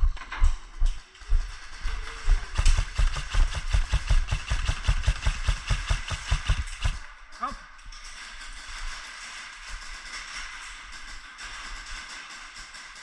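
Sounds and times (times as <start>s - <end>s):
running footsteps: 0.0s - 7.0s
gear rattling: 0.9s - 7.2s.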